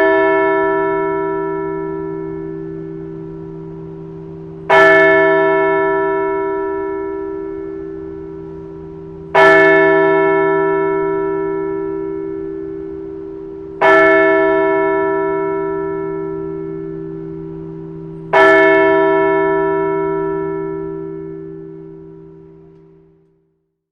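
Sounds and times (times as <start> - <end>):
large bell struck: 0.0 - 23.2
low hum: 1.6 - 4.8, 6.0 - 9.4.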